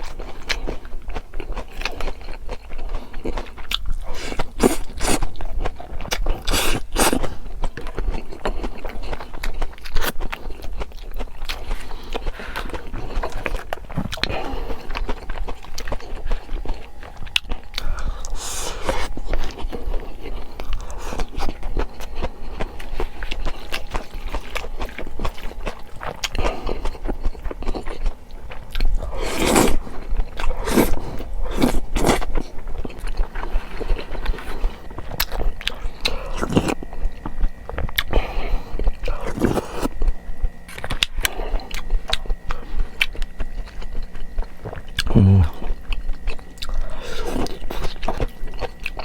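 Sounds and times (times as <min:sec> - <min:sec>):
person chewing food: 0:00.0 - 0:49.0
mouth clicks and crunches: 0:40.8 - 0:49.0.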